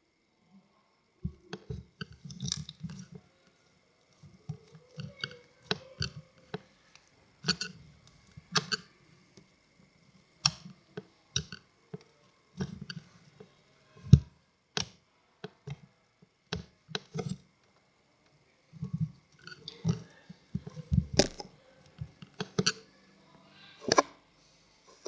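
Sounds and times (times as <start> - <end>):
slime squelching: 18.7 - 23.0.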